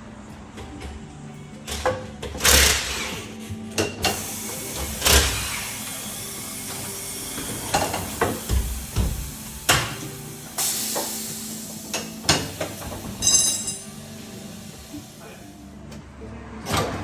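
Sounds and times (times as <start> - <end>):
steady hiss: 3.4 - 15.8.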